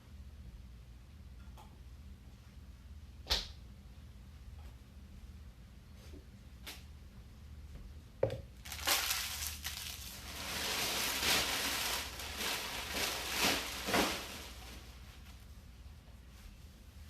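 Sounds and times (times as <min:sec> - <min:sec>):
packaging crinkling and rustling: 0:08.6 - 0:15.4.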